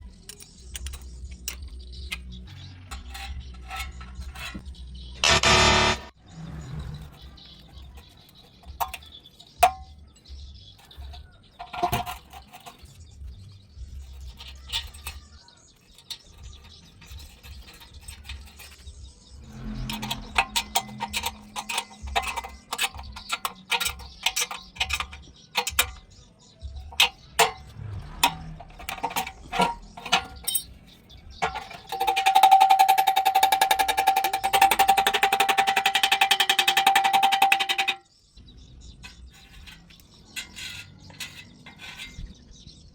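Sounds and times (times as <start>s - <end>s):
metal clinking and tapping: 0.0s - 6.1s, 7.0s - 42.9s
music: 0.0s - 6.2s.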